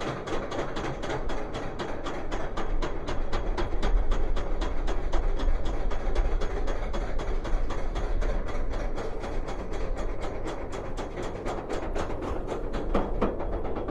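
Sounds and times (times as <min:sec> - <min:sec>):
roller coaster clicking on track: 0:00.0 - 0:13.9.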